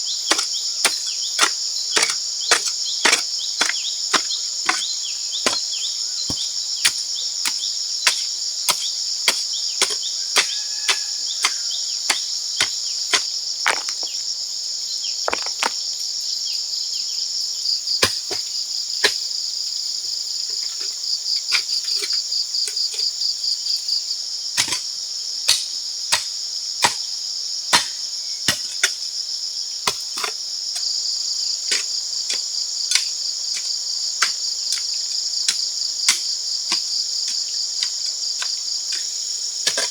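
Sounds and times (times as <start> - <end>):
jungle insects chorus: 0.0 - 39.9.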